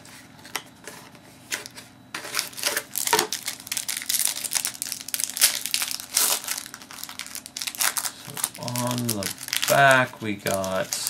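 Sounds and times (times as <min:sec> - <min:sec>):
plastic packaging crinkling: 0:02.2 - 0:11.0.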